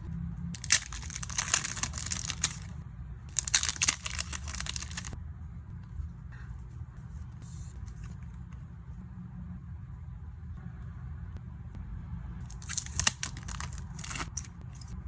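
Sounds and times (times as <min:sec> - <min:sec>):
packaging crinkling: 0:00.6 - 0:02.7, 0:03.3 - 0:05.2, 0:12.5 - 0:14.9.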